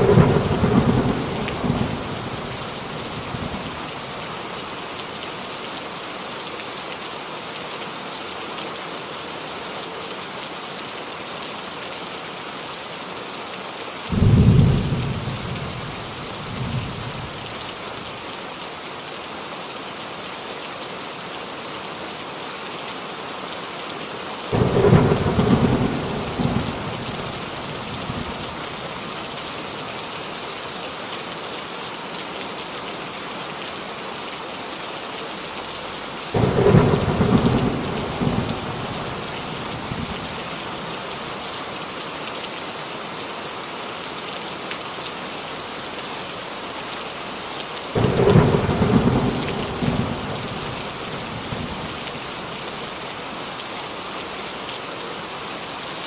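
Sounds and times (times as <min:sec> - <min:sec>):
thunder rumbling: 0:00.0 - 0:03.7, 0:24.5 - 0:28.8, 0:36.4 - 0:40.6, 0:48.0 - 0:52.0
rain falling on a roof: 0:00.0 - 0:56.0.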